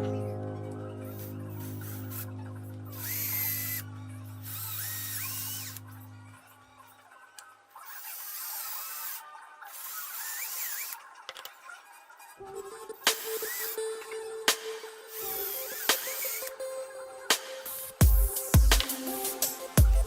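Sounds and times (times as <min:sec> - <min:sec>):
background music with low drone: 0:00.0 - 0:06.8, 0:12.4 - 0:20.0
power tool whining: 0:01.1 - 0:06.5, 0:07.1 - 0:16.6.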